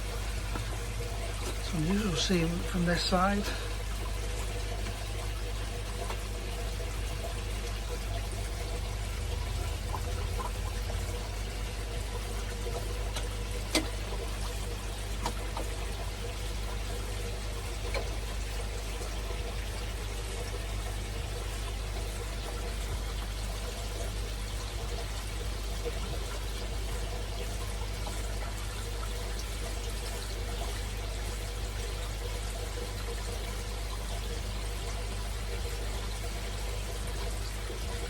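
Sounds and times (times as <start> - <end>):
low steady hum: 0.0 - 38.0
water pouring and trickling: 0.0 - 38.0.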